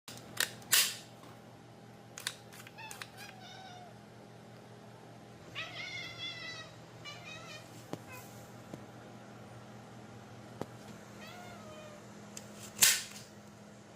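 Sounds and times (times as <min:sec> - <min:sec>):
cat meowing and chirping: 0:02.7 - 0:04.0, 0:05.5 - 0:08.2.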